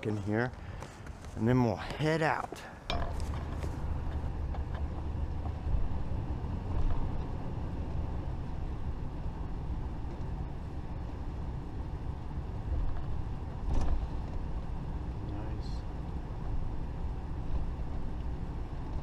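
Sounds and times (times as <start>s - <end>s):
engine and road rumble: 0.0s - 19.0s.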